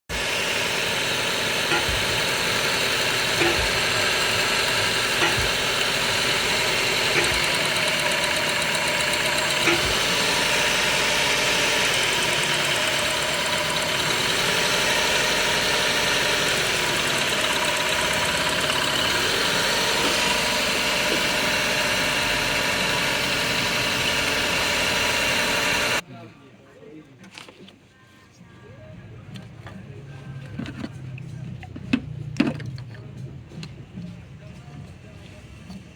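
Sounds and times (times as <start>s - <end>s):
car engine idling roughly: 0.1s - 26.0s
engine misfire thumps: 1.0s - 26.0s.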